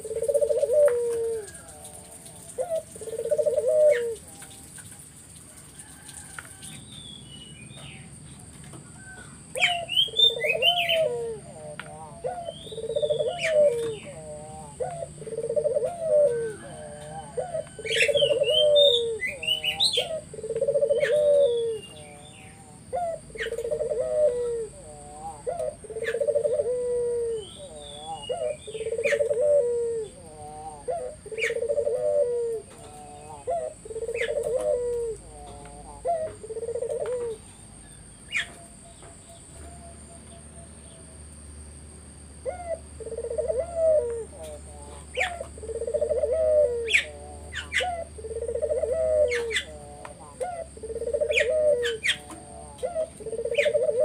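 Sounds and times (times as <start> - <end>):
dove cooing: 0.0 - 6.9, 7.6 - 41.2, 42.4 - 54.0
small birds chirping: 0.0 - 41.1, 42.4 - 54.0.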